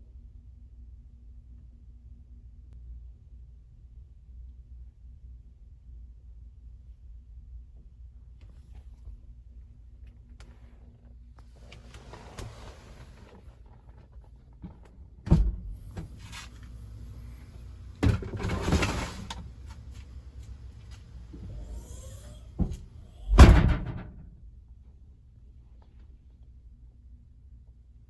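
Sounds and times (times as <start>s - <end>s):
low steady hum: 0.0s - 28.0s
heavy thuds and clunks: 14.5s - 24.5s.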